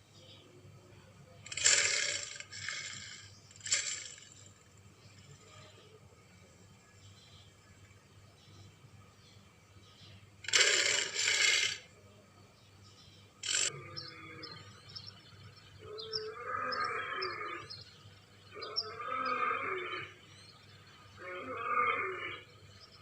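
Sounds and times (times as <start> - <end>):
big cat growling: 15.8 - 17.7, 18.5 - 20.2, 21.2 - 22.5.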